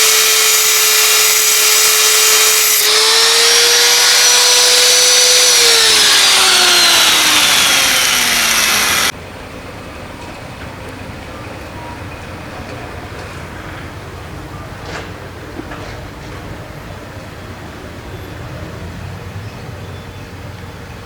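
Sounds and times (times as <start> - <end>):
power tool high whine: 0.0 - 9.1.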